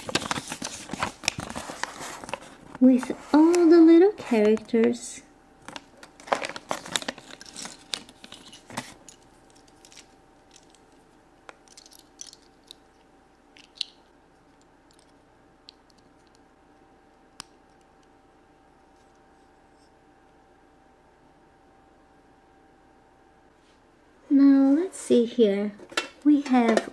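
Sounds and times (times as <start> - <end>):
packaging crinkling: 0.0 - 2.8, 5.6 - 11.0
small plastic pieces clicking: 11.6 - 12.9.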